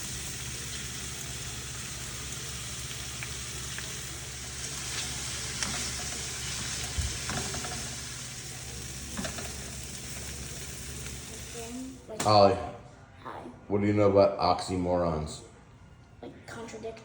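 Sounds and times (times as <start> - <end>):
food sizzling in a pan: 0.0 - 12.3.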